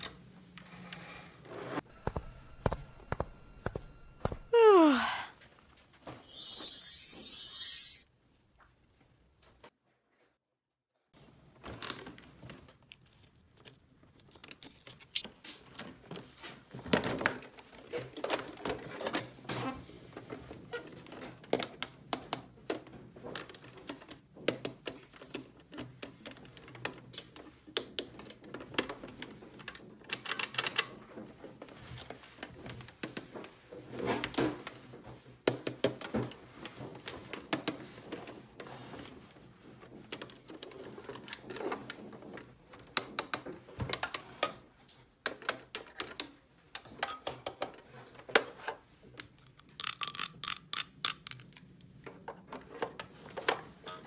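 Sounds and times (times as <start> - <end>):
plastic toy pieces clicking: 49.2 - 51.7.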